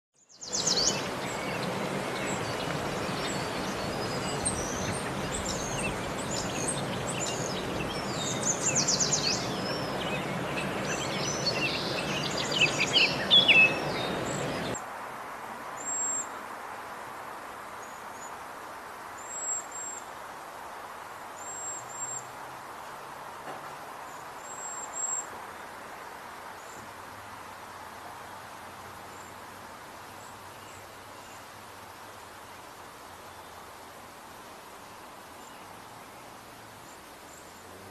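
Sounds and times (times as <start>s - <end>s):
songbirds singing: 0.2s - 14.8s
thin high bird calls: 0.3s - 14.8s
steady hiss: 0.3s - 37.9s.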